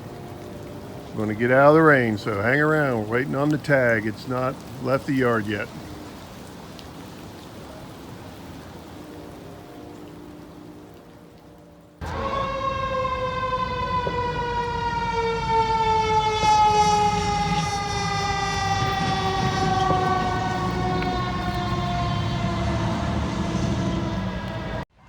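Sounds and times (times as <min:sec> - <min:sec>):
siren falling in pitch: 0:12.0 - 0:24.8.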